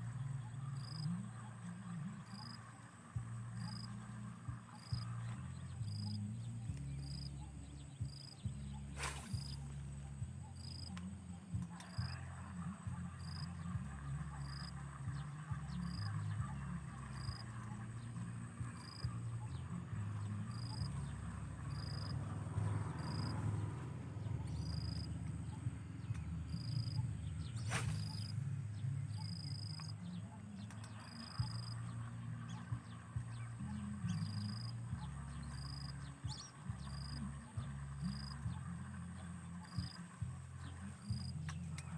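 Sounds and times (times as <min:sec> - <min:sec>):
insect chirping: 0:00.0 - 0:41.9
low rumble: 0:00.0 - 0:41.9
high-pitched insect drone: 0:11.8 - 0:23.8, 0:24.4 - 0:30.2.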